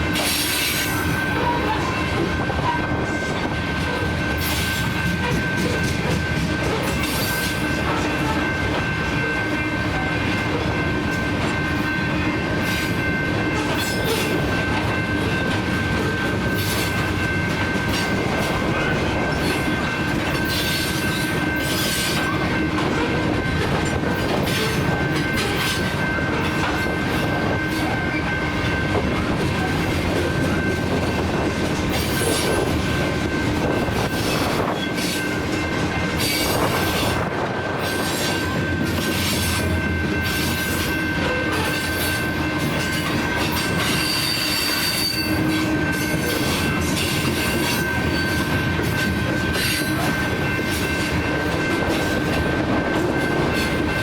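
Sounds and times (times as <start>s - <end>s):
freight train rumble: 0.0s - 54.0s
high-pitched wheel squeal: 42.8s - 48.5s.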